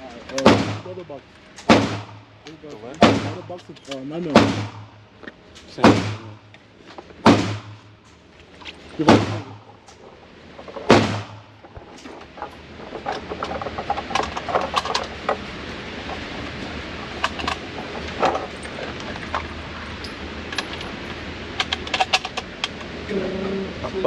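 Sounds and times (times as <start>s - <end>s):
loud gunshot: 0.4s - 2.2s, 3.0s - 3.6s, 4.3s - 5.0s, 5.8s - 6.4s, 7.2s - 7.9s, 9.0s - 9.6s, 10.9s - 11.6s
sharp cracks and clicks: 20.5s - 22.9s.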